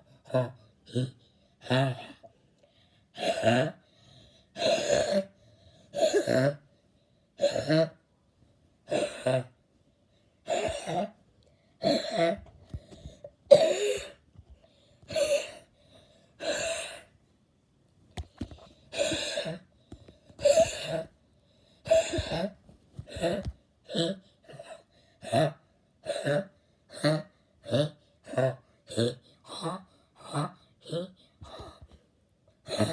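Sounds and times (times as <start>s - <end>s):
person making vocal noises: 32.7s - 32.9s.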